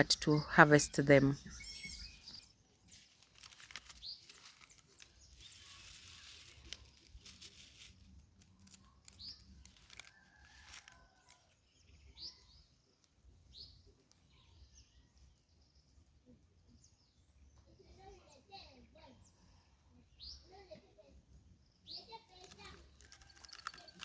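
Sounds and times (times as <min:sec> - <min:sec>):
faint bird chirps: 0:00.0 - 0:07.2.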